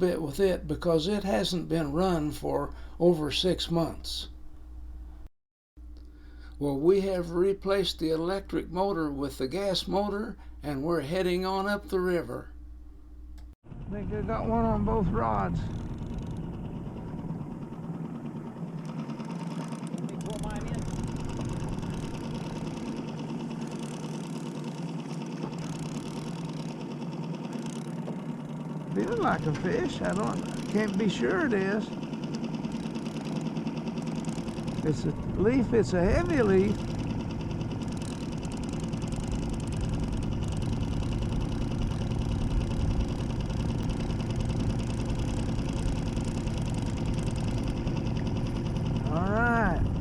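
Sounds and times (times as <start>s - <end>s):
outboard motor running: 13.4s - 50.0s.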